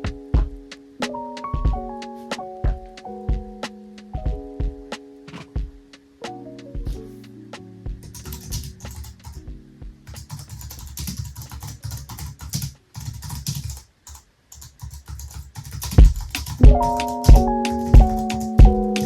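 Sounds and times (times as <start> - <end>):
lofi music with kick drum: 0.0 - 10.3, 16.0 - 19.0
fast keyboard typing: 8.0 - 9.5, 10.1 - 19.0.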